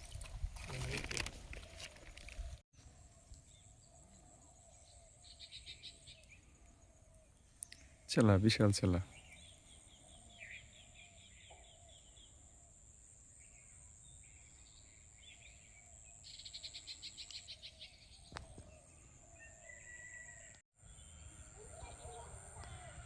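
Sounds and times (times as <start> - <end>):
faint birdsong chirps and trills: 1.5 - 23.0.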